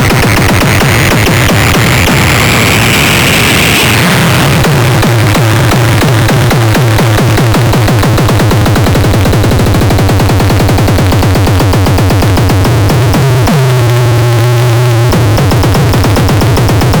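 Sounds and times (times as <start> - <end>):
low synthesizer drone: 0.0 - 17.0
synthesizer rapid pulsing pattern: 0.0 - 17.0.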